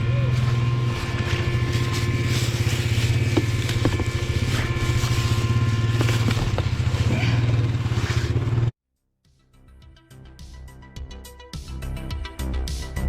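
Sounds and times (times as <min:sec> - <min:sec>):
atv engine running: 0:00.0 - 0:08.7.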